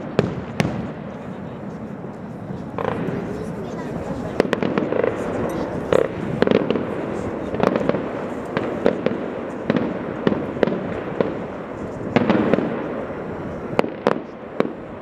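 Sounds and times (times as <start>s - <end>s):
fireworks bangs: 0.0s - 15.0s
fireworks rumble and crackle: 0.0s - 15.0s.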